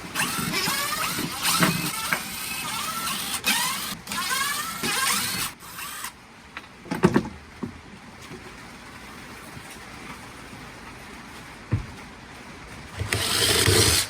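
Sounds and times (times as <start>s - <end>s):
small electric motor whirring: 0.2s - 6.2s, 13.0s - 14.0s.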